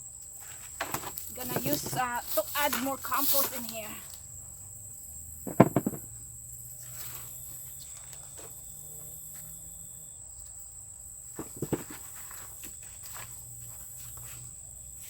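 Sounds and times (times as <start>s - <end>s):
insects chirring: 0.0s - 15.0s
quick sharp knocks: 5.5s - 6.0s.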